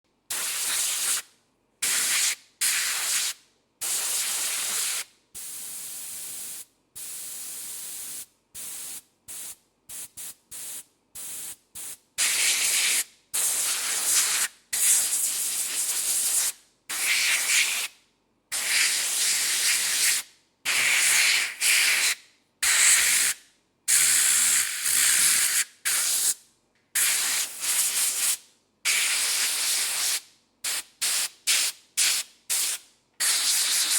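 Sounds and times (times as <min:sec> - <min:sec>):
air blow gun hissing bursts: 0:32.0 - 0:33.9.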